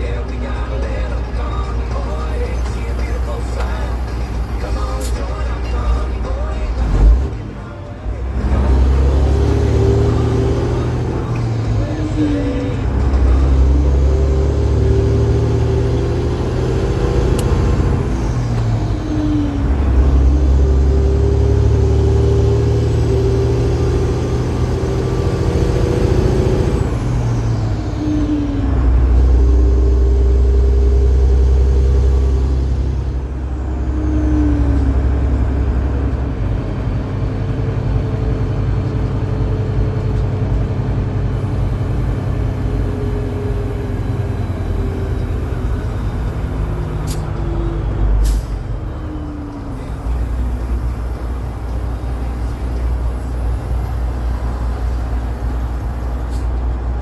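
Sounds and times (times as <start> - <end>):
diesel truck engine pulling: 0.0 - 57.0.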